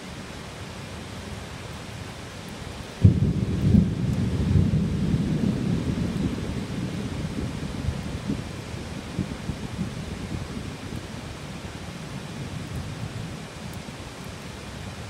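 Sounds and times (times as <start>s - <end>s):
heavy rain: 0.0s - 15.0s
thunder: 3.0s - 8.4s.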